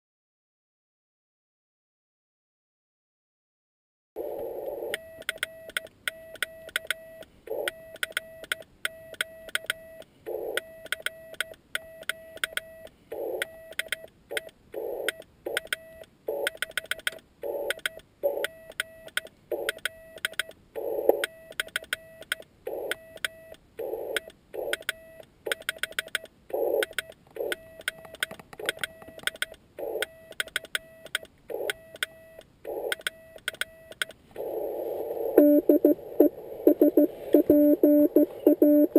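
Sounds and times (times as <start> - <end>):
morse code sidetone: 31.8 - 38.9.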